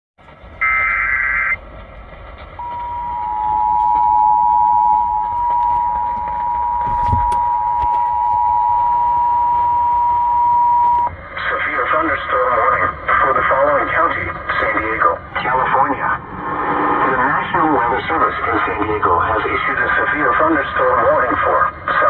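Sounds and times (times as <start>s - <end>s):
radio static: 0.6s - 1.6s, 2.6s - 22.0s
two-tone alert signal: 2.6s - 11.1s.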